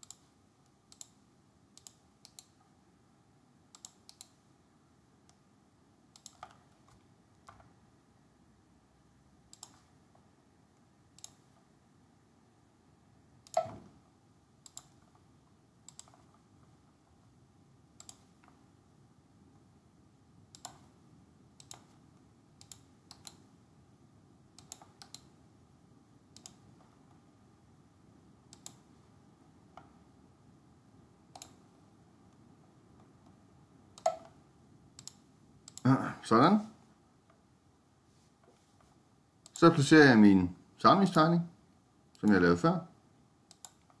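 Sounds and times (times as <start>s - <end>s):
computer mouse clicks: 0.0s - 2.8s, 3.7s - 4.4s, 6.1s - 7.8s, 9.5s - 10.2s, 11.1s - 11.6s, 13.4s - 13.8s, 14.6s - 16.4s, 18.0s - 18.6s, 20.5s - 20.9s, 21.6s - 23.5s, 24.6s - 25.4s, 26.3s - 27.2s, 28.5s - 28.9s, 31.3s - 31.6s, 34.0s - 34.4s, 35.0s - 35.9s, 38.4s - 39.8s, 43.5s - 44.0s.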